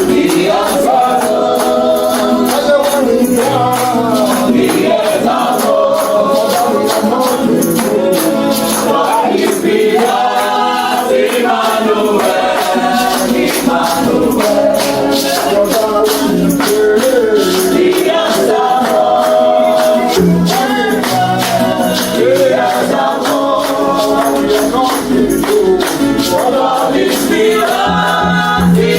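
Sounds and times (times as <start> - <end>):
choir singing slow melody: 0.0 - 2.4, 8.0 - 15.2, 26.4 - 28.9
high steady percussion: 0.0 - 28.9.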